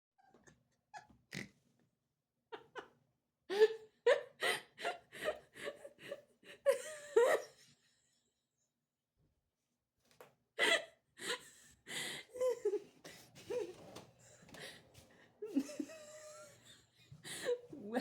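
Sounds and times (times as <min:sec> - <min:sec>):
person laughing with a wheeze: 0:15.4 - 0:17.5.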